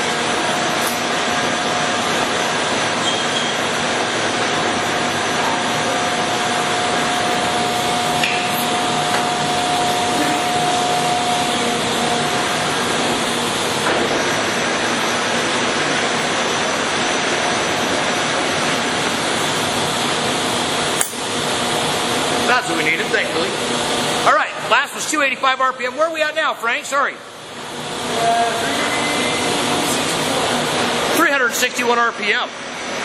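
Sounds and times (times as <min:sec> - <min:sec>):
lathe running: 0:00.0 - 0:33.0.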